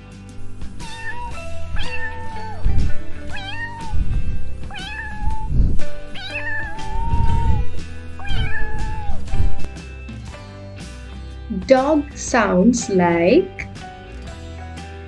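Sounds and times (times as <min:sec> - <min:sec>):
background music: 0:00.0 - 0:15.0
cat meowing: 0:00.5 - 0:09.8.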